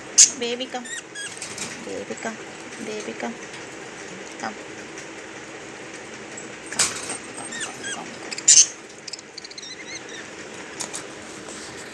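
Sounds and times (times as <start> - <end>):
bird chirping: 0.0 - 1.4, 7.1 - 10.8.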